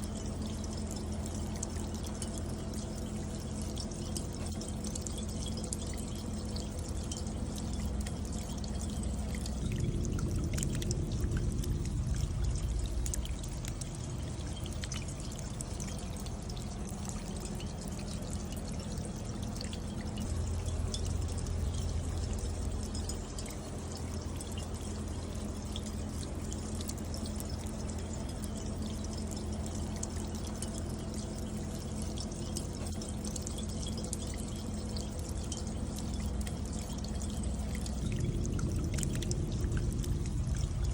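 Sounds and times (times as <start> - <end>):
drips ticking on copper: 0.0 - 40.9
water trickling down rain chain: 0.0 - 40.9
low rumble: 9.1 - 17.2, 20.2 - 23.7, 37.5 - 40.9.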